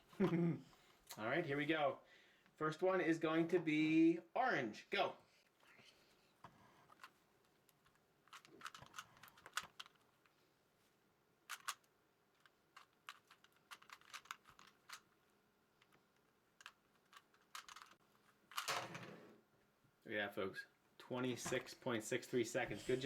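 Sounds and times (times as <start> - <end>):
plastic puzzle cube clicking: 7.8 - 10.1, 11.5 - 15.1, 16.6 - 18.7.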